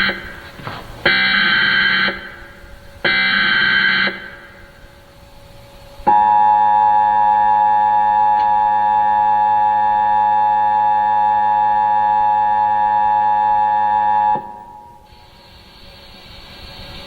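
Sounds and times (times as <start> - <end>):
buzzing data tone bursts: 0.0 - 0.4, 1.1 - 4.7.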